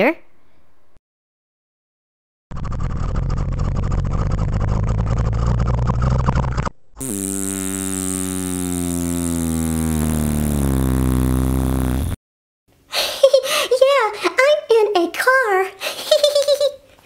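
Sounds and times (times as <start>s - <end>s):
engine with falling pitch: 2.5s - 12.2s
excavator engine droning: 2.5s - 12.2s.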